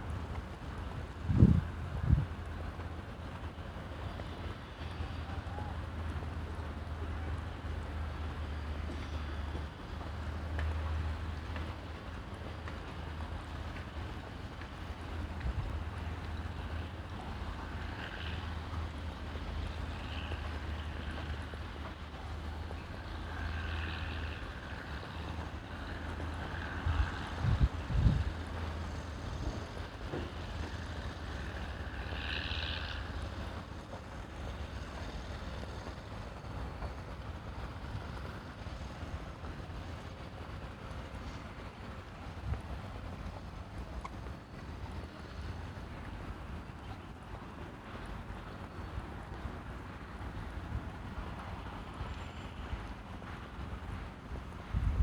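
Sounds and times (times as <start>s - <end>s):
wind rumbling on microphone: 1.0s - 2.7s, 26.5s - 29.9s, 53.9s - 55.0s.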